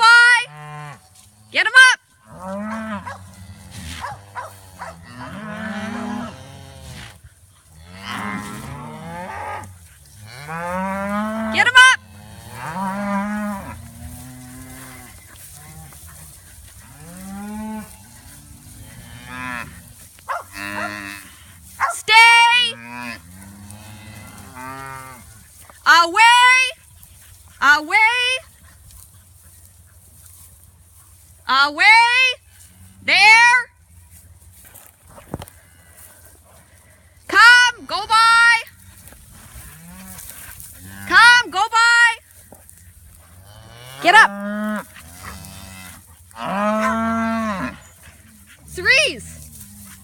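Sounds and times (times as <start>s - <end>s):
cows mooing: 0.0s - 1.4s, 2.2s - 25.5s, 37.6s - 42.1s, 43.3s - 50.0s.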